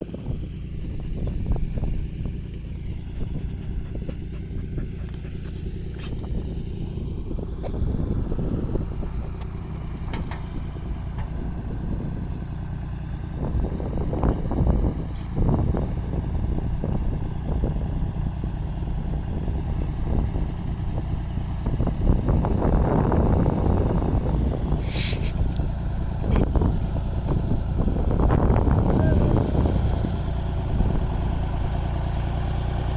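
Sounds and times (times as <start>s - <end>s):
diesel engine revving: 0.0s - 32.9s
knocks and clanks: 9.3s - 11.6s.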